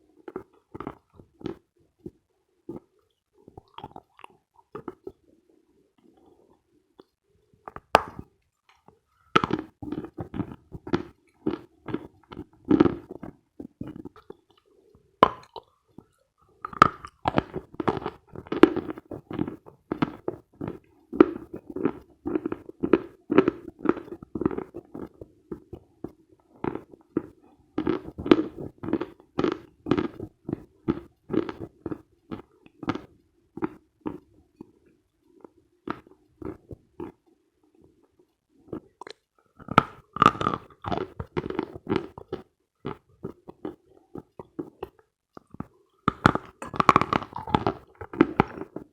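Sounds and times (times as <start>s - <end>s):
crunchy chewing: 0.2s - 5.2s, 7.0s - 37.3s, 38.7s - 48.9s.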